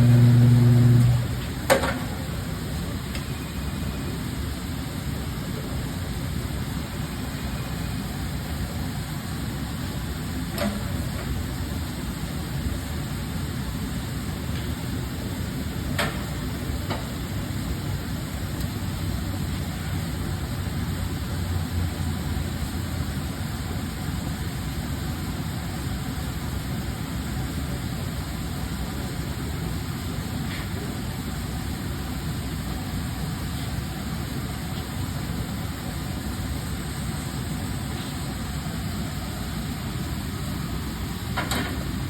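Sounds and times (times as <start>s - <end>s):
low machinery hum: 0.0s - 42.0s
steady hiss: 22.4s - 42.0s.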